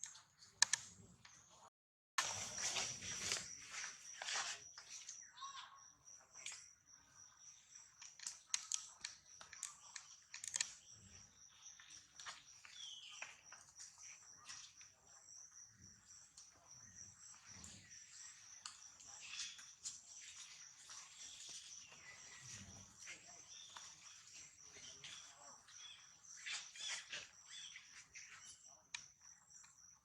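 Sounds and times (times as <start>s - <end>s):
sharp clicks: 0.0s - 0.9s, 8.0s - 11.0s
insects trilling: 2.2s - 30.0s.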